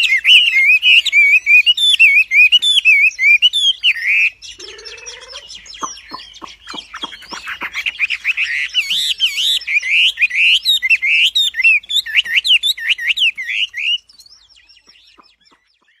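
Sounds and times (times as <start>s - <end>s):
songbird whistled notes: 0.0s - 16.0s
sharp clicking bird notes: 4.5s - 9.5s.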